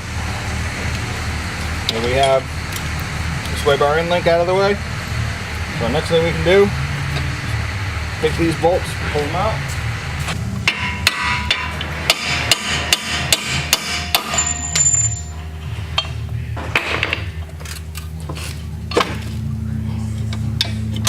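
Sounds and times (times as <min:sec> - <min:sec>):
steady low hum: 0:00.0 - 0:21.0
hammer striking metal: 0:10.6 - 0:15.4.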